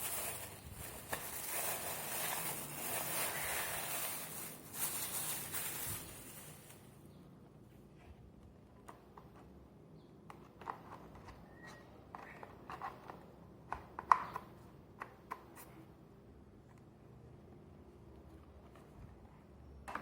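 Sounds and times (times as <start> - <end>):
hands handling plastic parts: 0.0 - 7.0.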